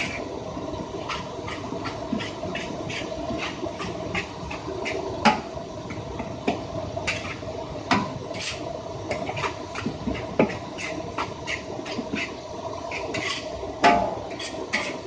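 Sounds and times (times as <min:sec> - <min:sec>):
steady hum: 0:00.0 - 0:15.0
metal spatula scraping a wok: 0:01.1 - 0:05.0, 0:07.1 - 0:07.4, 0:08.4 - 0:13.4, 0:14.3 - 0:15.0.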